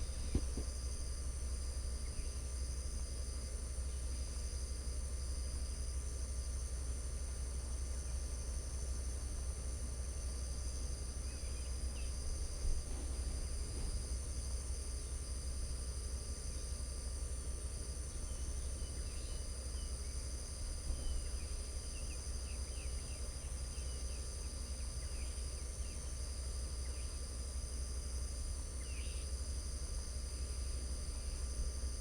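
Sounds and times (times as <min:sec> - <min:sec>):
high-pitched insect chorus: 0:13.2 - 0:32.0.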